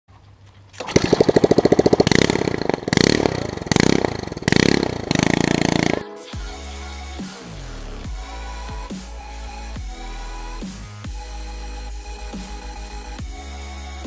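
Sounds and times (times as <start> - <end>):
lawn mower engine popping: 0.7 - 6.0
electronic music: 2.1 - 14.0.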